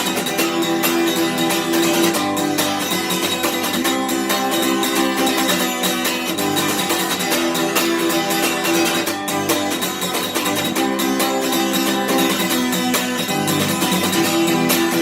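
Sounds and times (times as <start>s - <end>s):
rock guitar strumming: 0.0s - 15.0s.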